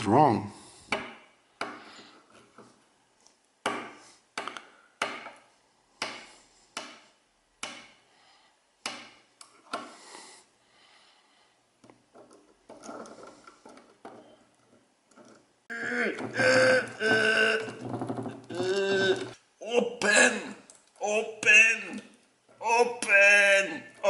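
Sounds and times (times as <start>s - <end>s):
hard objects knocking: 12.1s - 19.4s.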